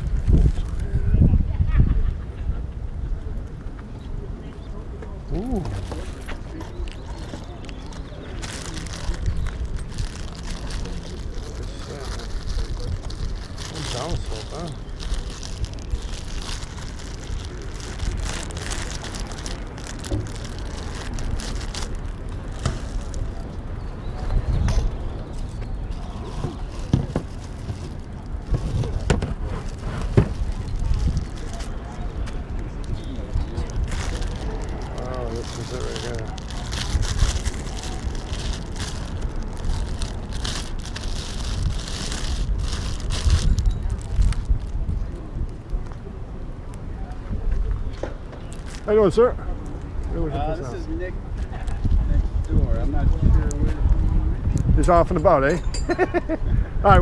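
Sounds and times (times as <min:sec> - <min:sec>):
wind buffeting microphone: 0:00.0 - 0:03.8, 0:05.2 - 0:46.4, 0:49.5 - 0:55.4, 0:56.2 - 0:57.0
crackles: 0:05.3 - 0:23.7, 0:25.3 - 0:49.0
bicycle tyre noise: 0:05.4 - 0:23.6, 0:25.9 - 0:45.9.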